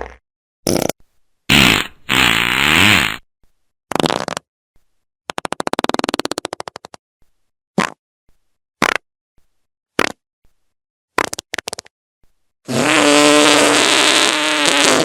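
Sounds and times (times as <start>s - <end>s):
fart sounds: 0.0s - 3.2s, 3.9s - 4.5s, 5.3s - 6.8s, 7.8s - 8.0s, 12.7s - 15.0s.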